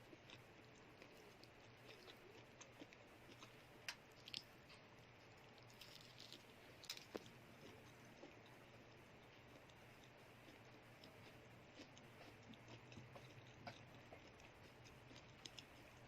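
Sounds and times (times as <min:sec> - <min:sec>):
chewing: 0:00.0 - 0:16.0
clicks and crackles: 0:05.6 - 0:07.4.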